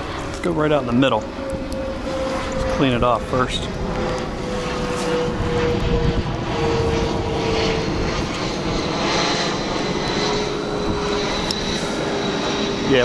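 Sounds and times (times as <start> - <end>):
airplane engine droning: 0.0 - 13.0
faint high whine: 0.0 - 13.0.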